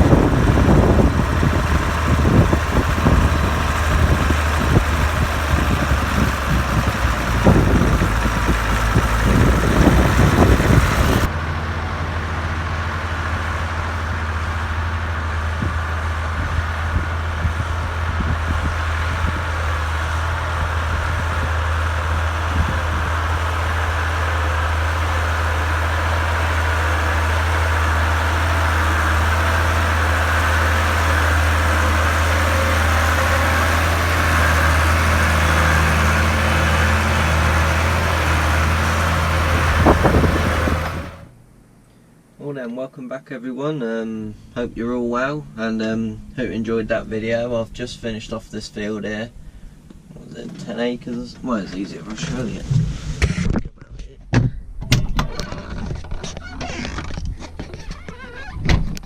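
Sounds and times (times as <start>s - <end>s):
wind buffeting microphone: 0.0s - 41.3s
diesel tractor engine droning: 0.0s - 42.4s, 44.3s - 52.6s.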